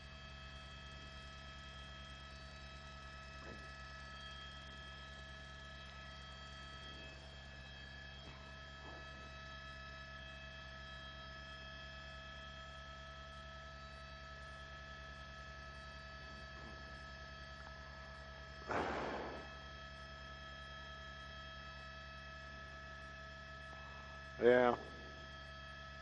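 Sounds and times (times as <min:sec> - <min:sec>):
electrical mains hum: 0:00.0 - 0:26.0
steady tones: 0:18.6 - 0:19.7
short burst of noise: 0:18.7 - 0:19.6.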